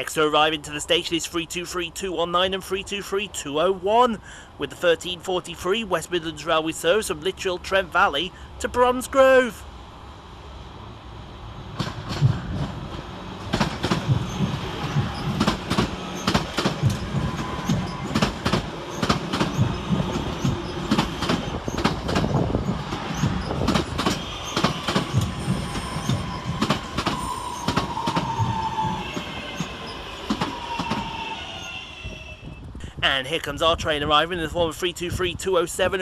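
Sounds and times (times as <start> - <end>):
train wheels clicking over rail joints: 11.6 - 32.8
train brakes squealing: 13.6 - 32.7.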